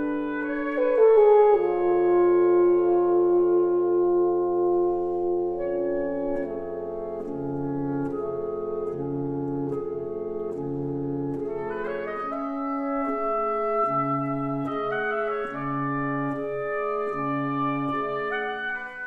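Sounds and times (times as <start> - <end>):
bass clarinet: 0.0 - 19.0
bassoon: 0.0 - 19.0
clarinet: 0.0 - 19.0
oboe: 0.0 - 19.0
saxophone: 0.0 - 19.0.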